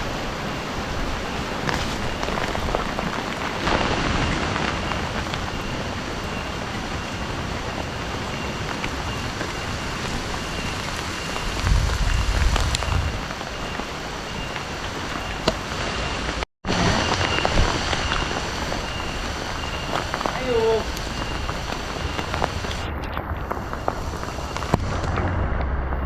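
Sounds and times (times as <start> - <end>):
steady rain falling: 0.0 - 26.0
low rumble: 16.7 - 26.0.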